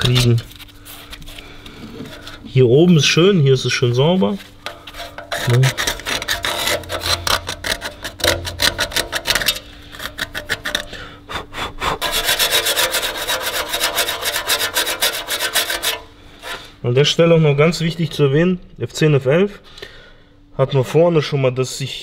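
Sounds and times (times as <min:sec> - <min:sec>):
scrubbing metal by hand: 0:03.8 - 0:11.0, 0:12.0 - 0:16.7.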